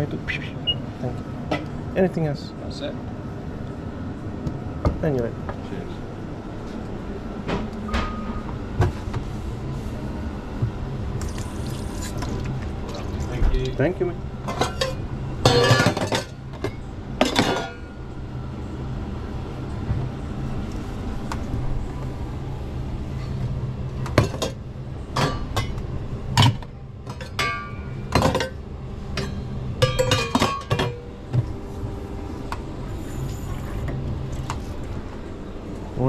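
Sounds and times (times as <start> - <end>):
steady low hum: 0.0 - 36.0
crockery and cutlery clinking: 14.5 - 16.4, 17.2 - 17.9, 29.2 - 31.0.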